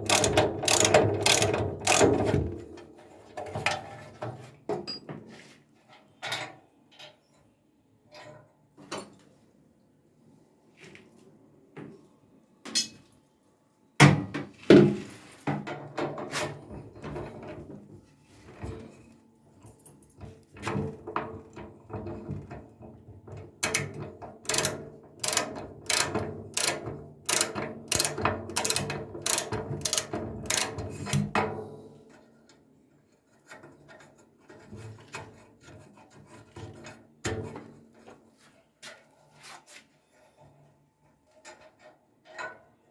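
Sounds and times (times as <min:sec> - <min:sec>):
metal clicks: 0:00.0 - 0:02.3, 0:24.5 - 0:31.2.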